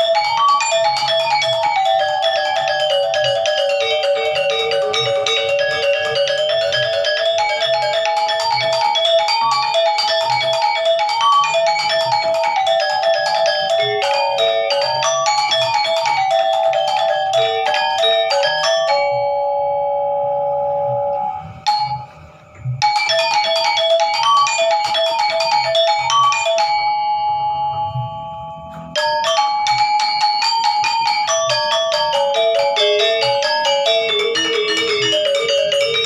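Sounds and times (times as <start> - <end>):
gamelan music: 0.0 - 36.0.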